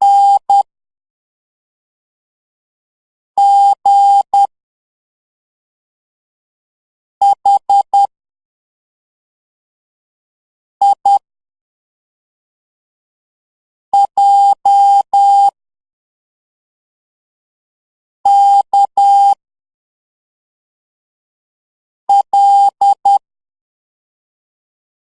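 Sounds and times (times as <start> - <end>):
morse code beeps: 0.0 - 0.6, 18.3 - 19.4, 22.1 - 23.2.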